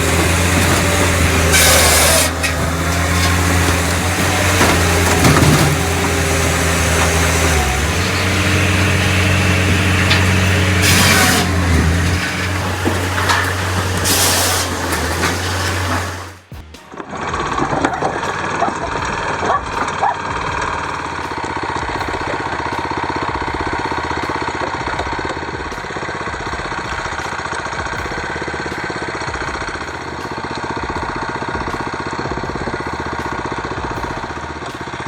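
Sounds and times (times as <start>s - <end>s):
engine running: 0.0s - 35.0s.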